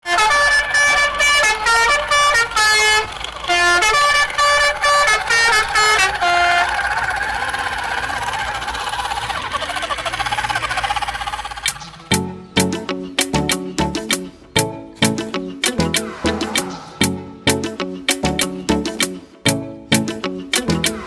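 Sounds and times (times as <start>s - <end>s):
musical vehicle horn tune: 0.0s - 8.7s
steady noisy sound: 0.6s - 12.1s.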